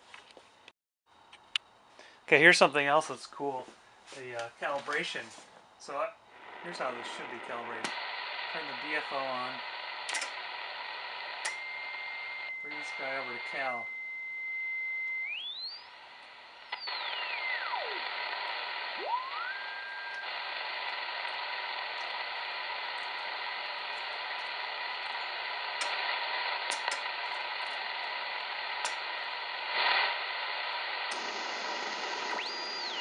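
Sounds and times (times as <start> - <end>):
radio receiver hiss: 2.0 - 33.0
faint crackles: 6.3 - 13.9, 15.0 - 33.0
heterodyne whistle sweeping: 13.7 - 16.0, 19.0 - 20.2.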